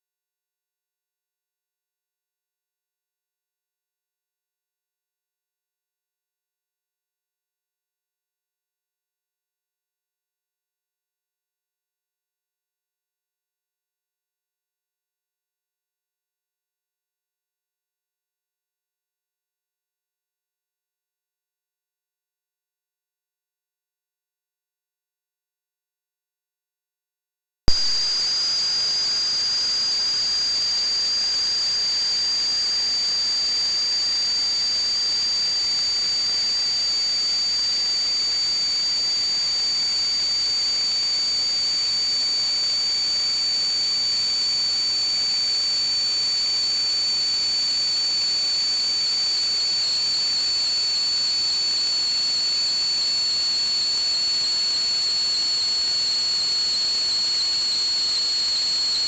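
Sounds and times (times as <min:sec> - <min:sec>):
high-pitched whistle: 0:40.1 - 0:59.0.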